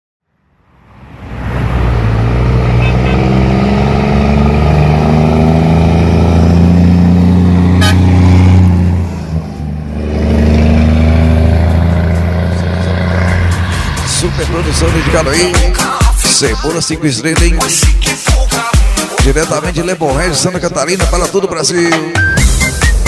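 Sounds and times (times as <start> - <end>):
vehicle engine running: 0.7 - 16.7.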